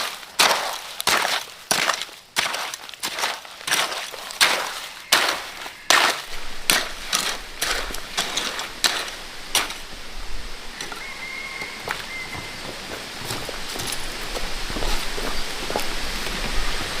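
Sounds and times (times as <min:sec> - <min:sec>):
hand tool strokes: 0:00.0 - 0:09.9.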